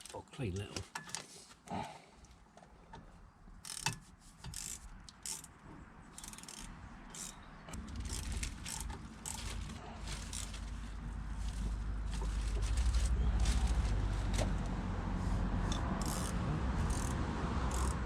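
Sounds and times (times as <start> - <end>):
hand tools clicking on metal: 3.6 - 9.6, 15.7 - 18.0.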